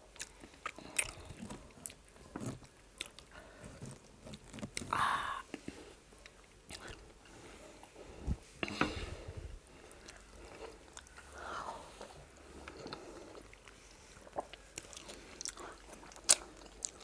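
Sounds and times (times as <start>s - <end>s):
person chewing food: 0.0s - 17.0s.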